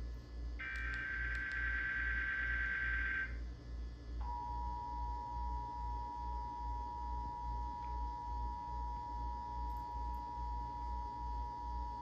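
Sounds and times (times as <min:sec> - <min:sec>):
harsh data warble: 0:00.6 - 0:03.4
low hum: 0:04.2 - 0:12.0.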